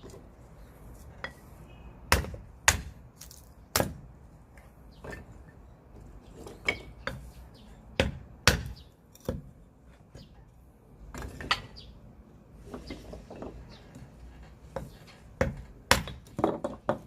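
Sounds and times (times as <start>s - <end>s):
firewood being chopped: 2.1s - 4.2s, 7.9s - 10.3s, 14.7s - 17.0s.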